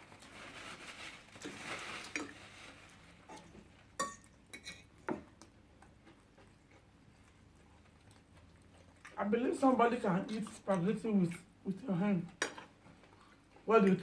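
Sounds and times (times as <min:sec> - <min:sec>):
rustle of food: 0:00.0 - 0:04.3
dishes clinking: 0:04.0 - 0:05.3.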